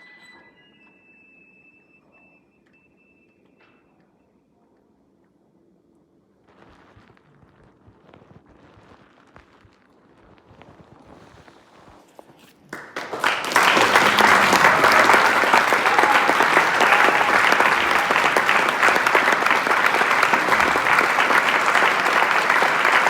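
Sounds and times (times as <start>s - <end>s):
audience applauding: 12.7s - 23.0s.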